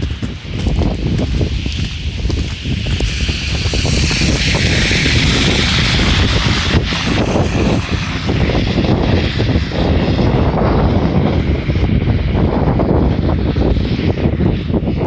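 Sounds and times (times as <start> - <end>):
storm wind buffeting microphone: 0.0 - 15.0
hiss: 1.5 - 8.5.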